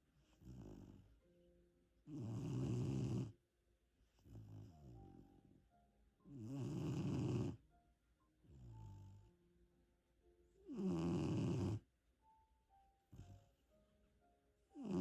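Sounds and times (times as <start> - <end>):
puppy snoring: 0.2 - 1.2, 2.0 - 3.4, 4.2 - 5.6, 6.3 - 7.7, 8.5 - 9.3, 10.6 - 11.9, 14.7 - 15.0.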